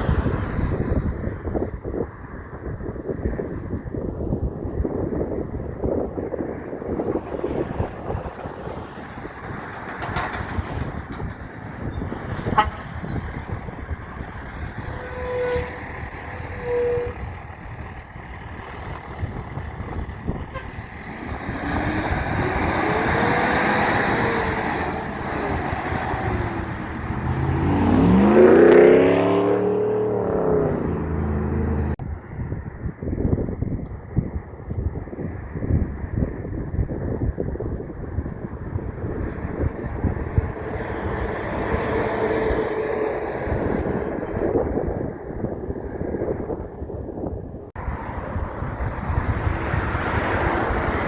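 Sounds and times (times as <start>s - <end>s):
trucks passing on road: 0.0s - 51.0s
horn toots: 12.4s - 13.3s, 14.7s - 17.3s, 20.3s - 32.0s.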